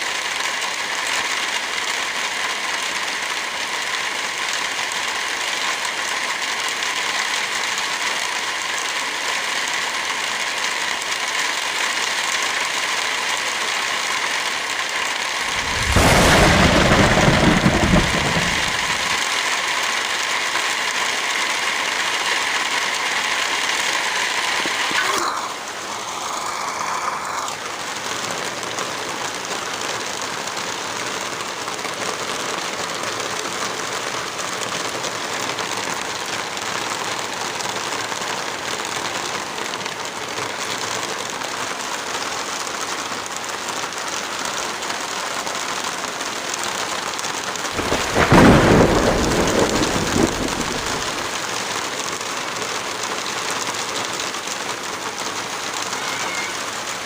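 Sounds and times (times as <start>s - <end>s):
heavy rain falling: 0.0s - 57.0s
thunder clap rumbling: 15.5s - 19.2s, 47.8s - 51.4s.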